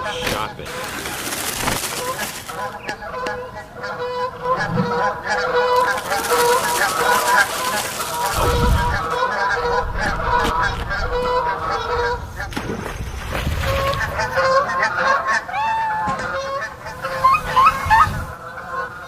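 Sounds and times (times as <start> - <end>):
chorus of animal calls: 0.0 - 12.5, 13.6 - 19.0.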